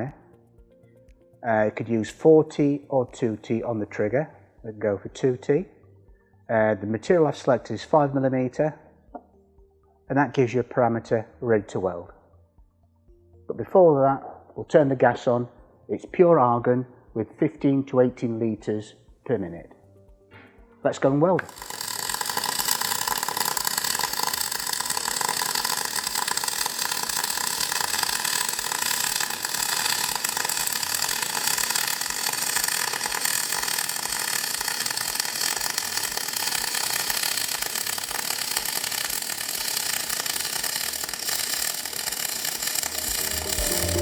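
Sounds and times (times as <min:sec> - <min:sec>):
welding arc crackling hiss: 0:21.4 - 0:44.0.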